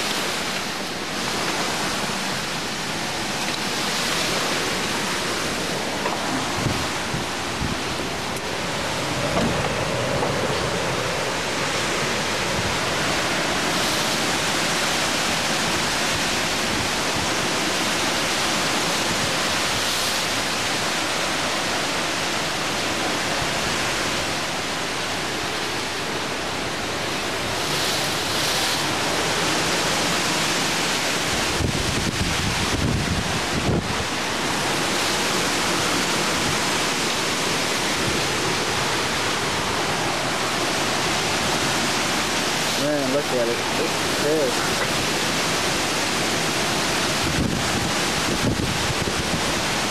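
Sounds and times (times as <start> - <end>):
driving rain: 0.0 - 49.9
hurricane wind: 0.0 - 49.9
wind buffeting microphone: 3.4 - 19.9, 27.3 - 49.9.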